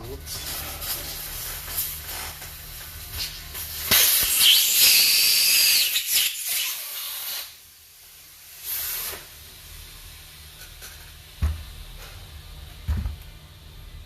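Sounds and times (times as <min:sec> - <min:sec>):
compressed air hissing: 0:00.1 - 0:10.6.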